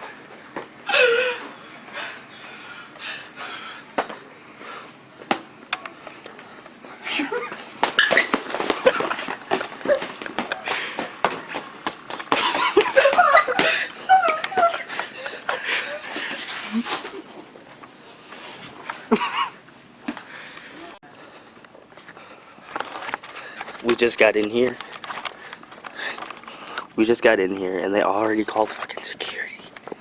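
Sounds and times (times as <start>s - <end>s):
wheezing breathless laughter: 0.9s - 2.3s, 12.4s - 17.3s.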